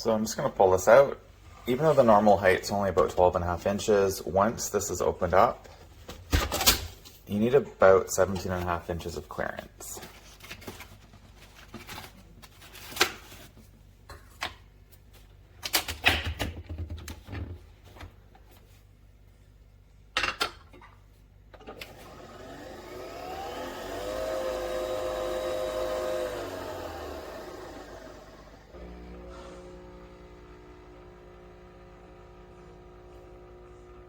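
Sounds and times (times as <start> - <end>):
coffee machine motor humming: 21.7 - 34.0.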